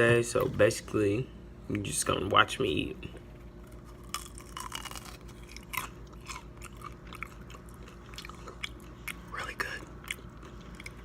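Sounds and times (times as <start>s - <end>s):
person chewing crunchy food: 3.6s - 11.0s.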